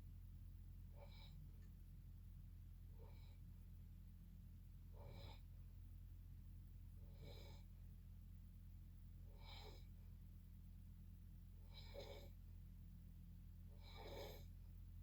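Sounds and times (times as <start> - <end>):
steady low hum: 0.0 - 15.0
faint snoring breaths: 0.9 - 1.6, 2.9 - 3.6, 4.8 - 5.6, 7.0 - 7.8, 9.2 - 10.1, 11.6 - 12.5, 13.6 - 14.6.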